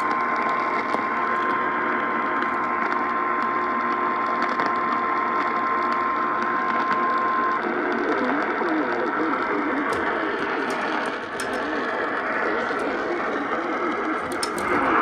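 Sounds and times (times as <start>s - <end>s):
radio signal hiss: 0.0s - 15.0s
garbled wavering noise: 9.6s - 15.0s.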